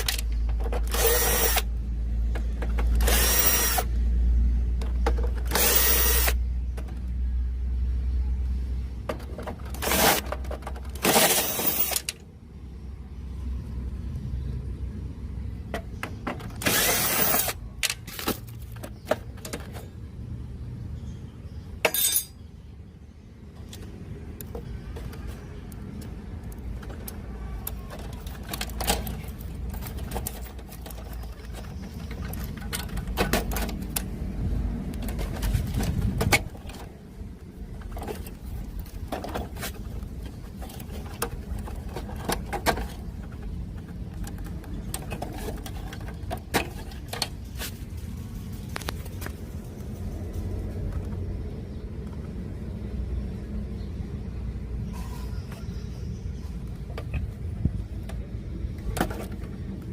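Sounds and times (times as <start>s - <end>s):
handling clicks and knocks: 0.0s - 1.0s, 2.2s - 3.1s, 4.7s - 5.6s, 23.6s - 49.9s.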